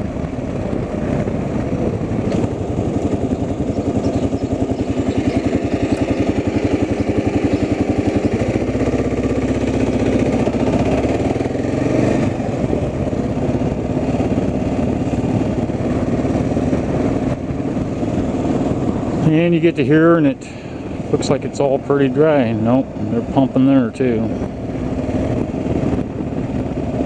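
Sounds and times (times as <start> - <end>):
vehicle engine running: 0.0 - 27.0.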